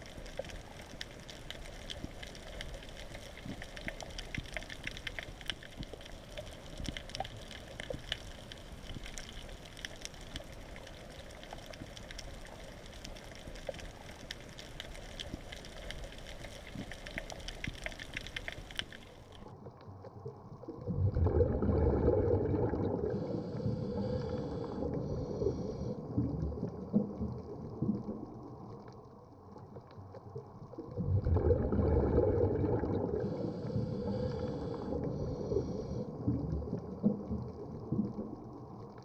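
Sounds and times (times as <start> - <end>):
fine crackling clicks: 0.0 - 20.2
underwater watery hiss: 33.0 - 36.1.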